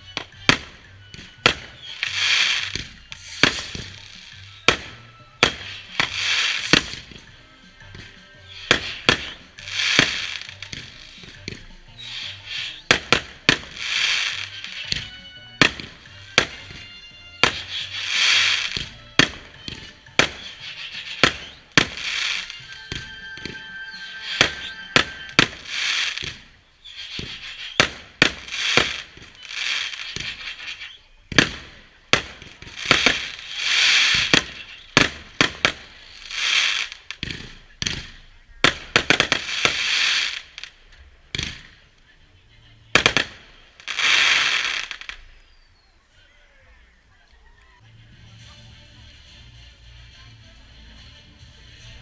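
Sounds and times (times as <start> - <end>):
fireworks hiss: 0.0 - 16.8, 17.4 - 41.8, 43.0 - 45.4
fireworks bangs and pops: 0.0 - 42.1, 42.9 - 45.5.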